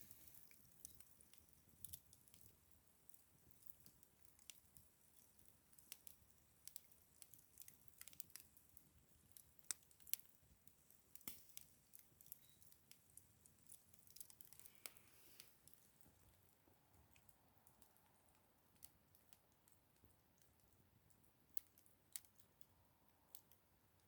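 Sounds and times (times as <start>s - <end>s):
faint hiss: 0.0s - 0.8s, 14.3s - 17.0s
campfire crackling: 0.0s - 24.0s.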